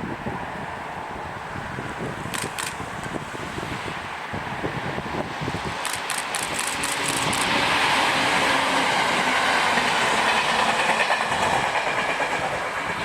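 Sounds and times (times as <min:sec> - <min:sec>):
sharp high clicks: 0:02.3 - 0:03.1, 0:05.8 - 0:07.6
train wheels clattering over rails: 0:05.7 - 0:13.0.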